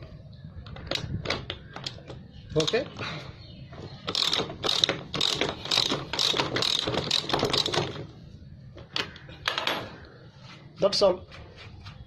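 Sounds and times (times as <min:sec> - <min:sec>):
ratchet wrench clicking: 0:04.1 - 0:07.9.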